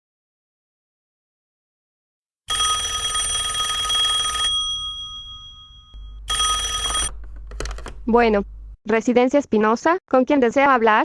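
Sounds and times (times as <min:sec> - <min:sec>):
telephone bell ringing: 0:02.5 - 0:07.2.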